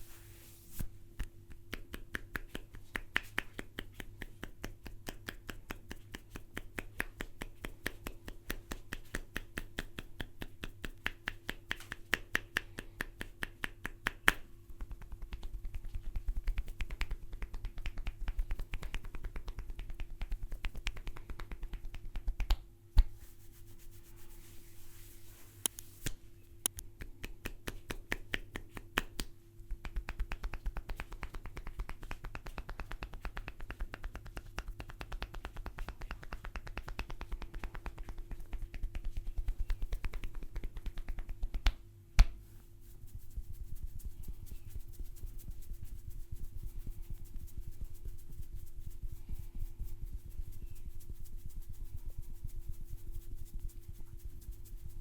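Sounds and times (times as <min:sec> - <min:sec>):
hands slapping in massage: 0:00.7 - 0:24.3, 0:27.0 - 0:42.4.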